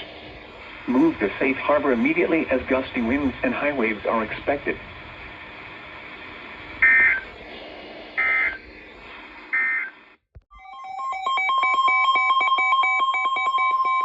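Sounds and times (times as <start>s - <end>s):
piercing alarm tone: 6.8s - 7.3s, 8.2s - 8.6s, 9.5s - 14.0s
rapid electronic beeping: 6.8s - 7.4s, 8.2s - 8.7s, 9.5s - 10.0s.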